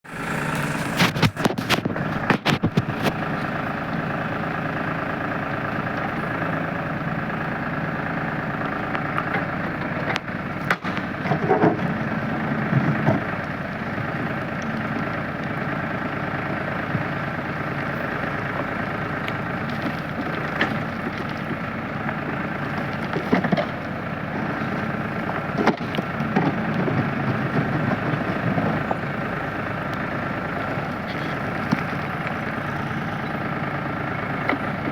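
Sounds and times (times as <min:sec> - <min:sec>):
diesel engine running: 0:00.0 - 0:34.9
sharp knocks and clatters: 0:00.8 - 0:03.2.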